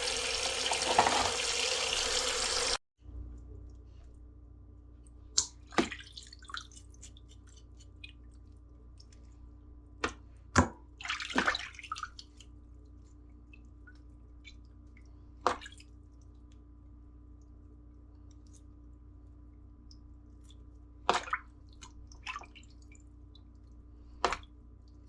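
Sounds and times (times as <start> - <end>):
water dripping: 5.0 - 9.2
water splashing: 11.0 - 12.4.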